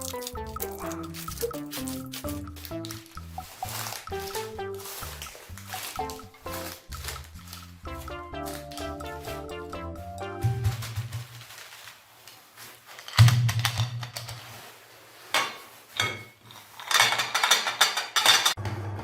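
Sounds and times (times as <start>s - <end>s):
chocolate pieces clattering in grinder: 0.0s - 8.9s.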